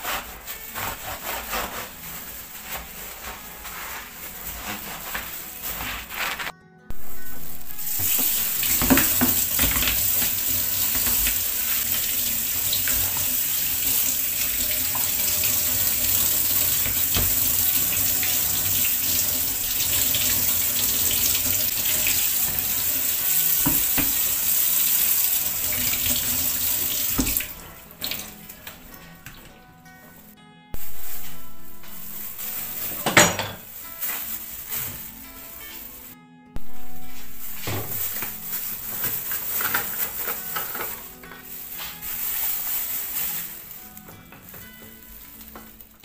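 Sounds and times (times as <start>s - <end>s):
tap water running into sink: 7.8s - 28.3s.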